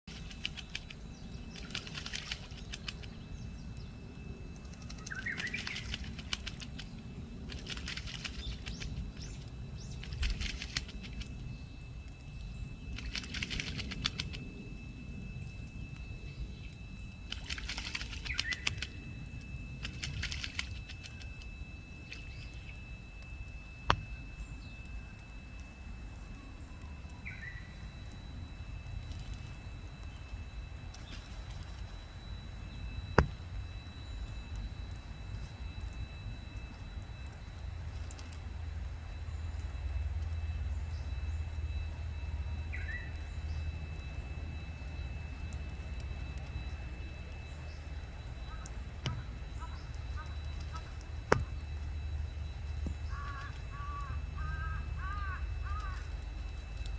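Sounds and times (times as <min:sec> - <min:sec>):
crow splashing in water: 0:01.5 - 0:03.2, 0:04.7 - 0:09.4, 0:17.3 - 0:18.9, 0:19.8 - 0:21.2, 0:53.0 - 0:56.2.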